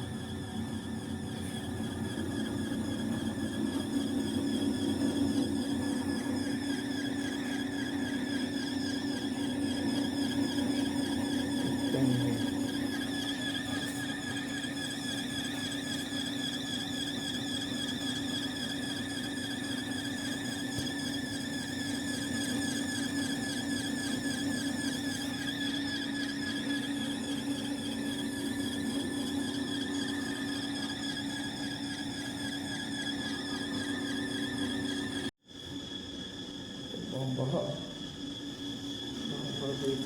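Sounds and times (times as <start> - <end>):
high wavering whine: 0.0 - 40.0
air conditioner humming: 11.2 - 14.1.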